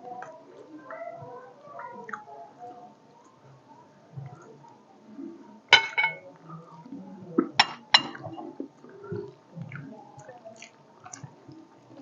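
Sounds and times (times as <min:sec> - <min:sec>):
dishes clinking: 0:05.7 - 0:06.3, 0:07.6 - 0:08.4
soft handling of plates: 0:05.7 - 0:06.4.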